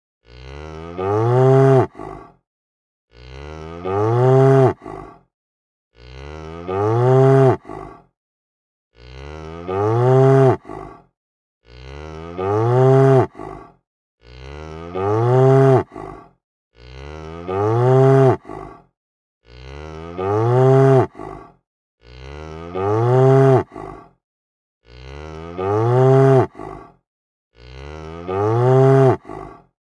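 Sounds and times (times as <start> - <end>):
cow mooing: 0.3 - 2.0, 3.1 - 4.9, 6.0 - 7.8, 9.0 - 10.8, 11.7 - 13.4, 14.2 - 16.0, 16.8 - 18.6, 19.5 - 21.2, 22.0 - 23.8, 24.9 - 26.7, 27.6 - 29.5.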